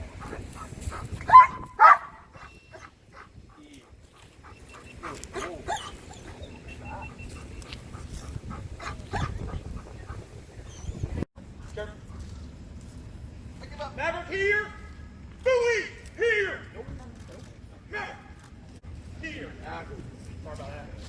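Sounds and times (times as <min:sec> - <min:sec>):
dog barking: 0:00.2 - 0:03.3, 0:08.8 - 0:09.4.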